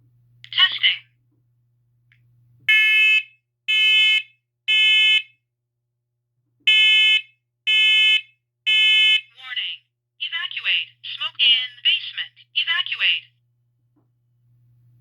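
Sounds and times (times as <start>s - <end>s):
shrill alarm beeps: 2.7s - 5.2s.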